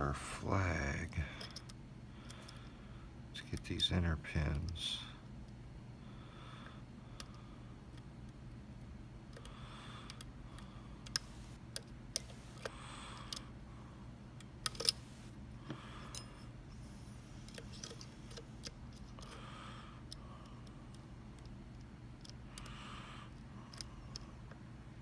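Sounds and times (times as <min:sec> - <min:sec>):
lock pick clicking and scraping: 0:14.6 - 0:15.3, 0:17.4 - 0:19.4.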